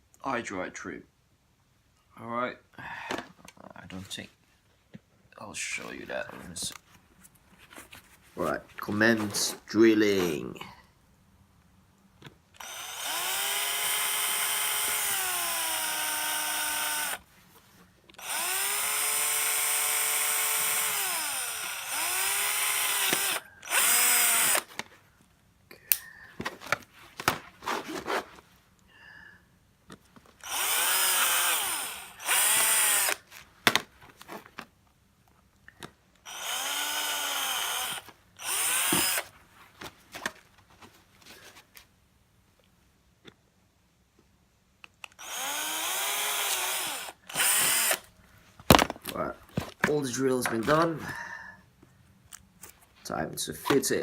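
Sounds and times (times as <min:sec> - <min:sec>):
power drill boring into plastic: 0:12.6 - 0:17.2, 0:18.2 - 0:24.7, 0:30.4 - 0:33.3, 0:36.2 - 0:39.3, 0:45.2 - 0:48.1.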